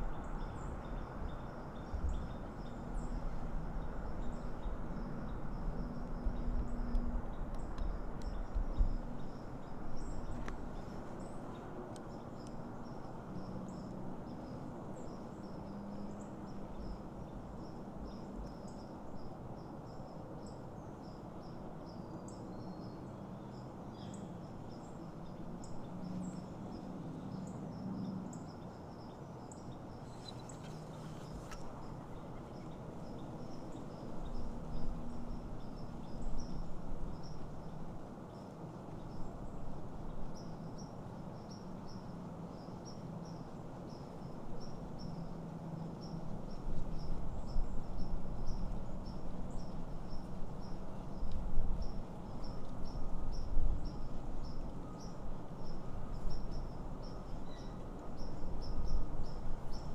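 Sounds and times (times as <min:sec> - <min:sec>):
strong wind buffeting microphone: 0:00.0 - 0:10.8.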